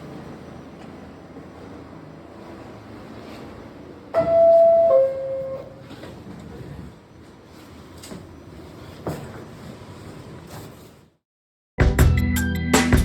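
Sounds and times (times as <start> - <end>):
train rumble: 0.0 - 11.1
two-note descending door chime: 4.2 - 5.8.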